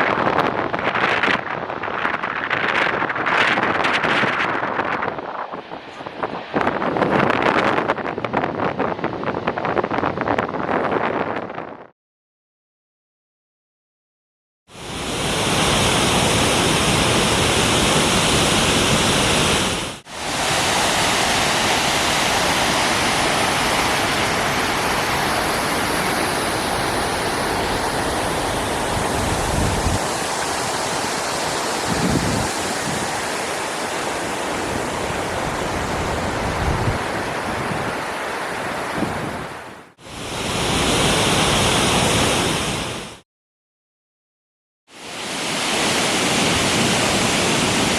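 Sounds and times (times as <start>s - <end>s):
waterfall roaring: 14.9s - 42.9s.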